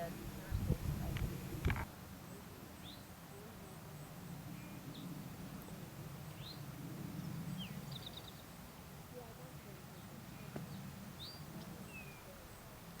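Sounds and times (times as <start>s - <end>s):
songbird chirping: 2.2s - 8.8s, 9.6s - 12.9s.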